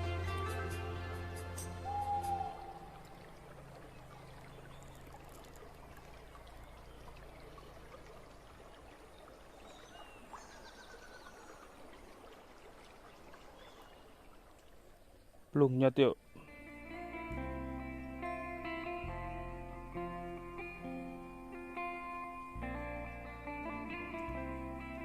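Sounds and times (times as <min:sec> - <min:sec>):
river water rushing: 0:00.0 - 0:15.5.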